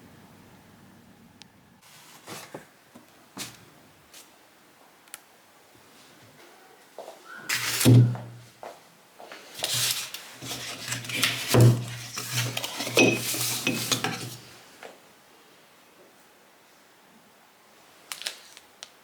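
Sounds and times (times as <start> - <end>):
dishes clinking: 10.4 - 14.5.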